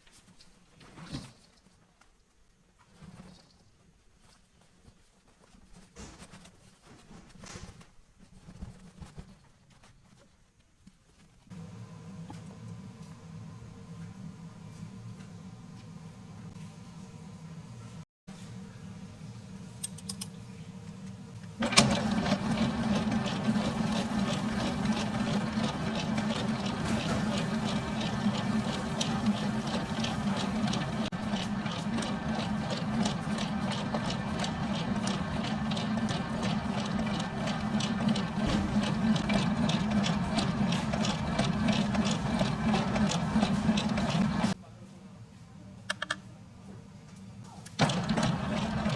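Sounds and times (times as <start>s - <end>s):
machine clattering over low hum: 21.6s - 44.6s, 47.8s - 48.9s.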